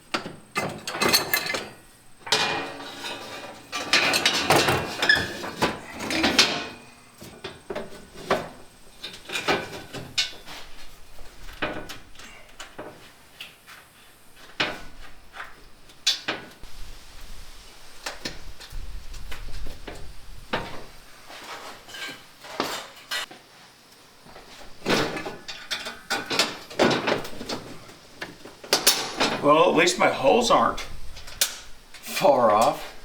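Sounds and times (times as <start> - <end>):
metal parts clanking: 0.6 - 7.0, 28.7 - 29.5.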